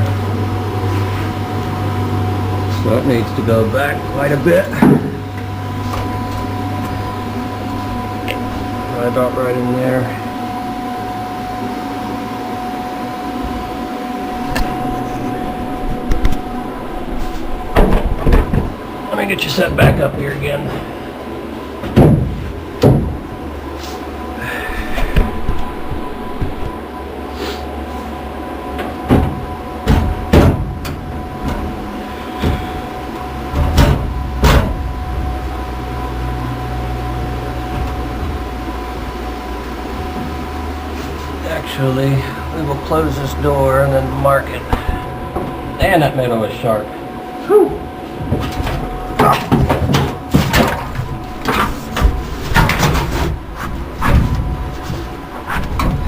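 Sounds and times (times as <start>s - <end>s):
machine humming: 0.0s - 56.0s
sheet metal clunking and knocking: 21.8s - 23.2s, 29.1s - 31.7s, 33.5s - 34.9s.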